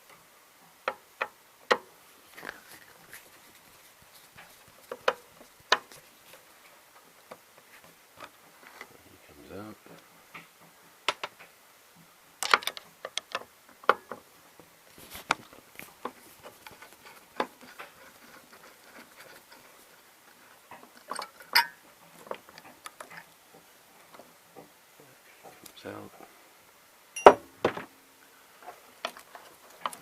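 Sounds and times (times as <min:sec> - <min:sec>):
metal parts clicking and clinking: 0:21.0 - 0:21.8.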